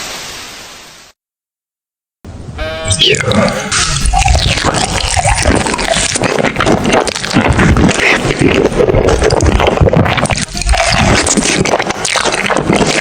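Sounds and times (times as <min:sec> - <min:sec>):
wet chewing and mouth sounds: 0:03.0 - 0:13.0.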